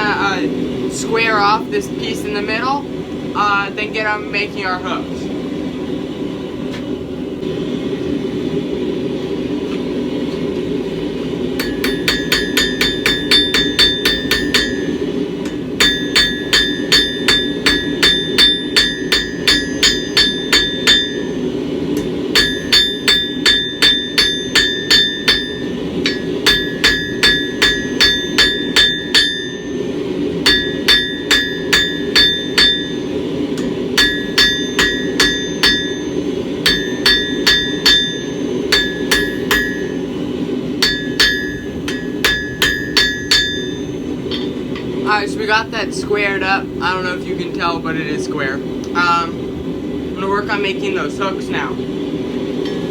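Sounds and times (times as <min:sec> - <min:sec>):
hammer ringing on anvil: 0:11.6 - 0:44.6.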